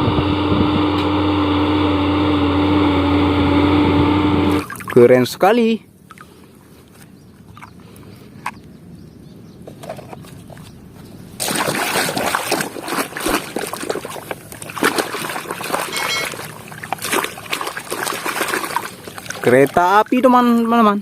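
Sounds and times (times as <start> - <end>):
water splashing over plastic toys: 4.5 - 5.0, 11.4 - 21.0.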